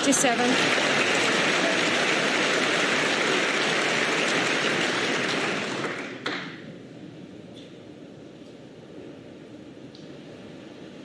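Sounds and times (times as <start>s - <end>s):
audience applauding: 0.0s - 6.6s.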